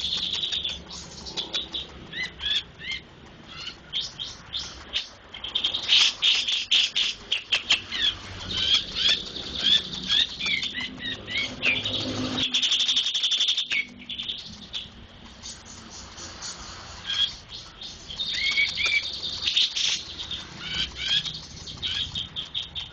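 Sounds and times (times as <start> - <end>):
fast buzzy bird trill: 0.0 - 22.9
songbird chirping: 0.0 - 22.9
wing flutters: 0.0 - 22.9.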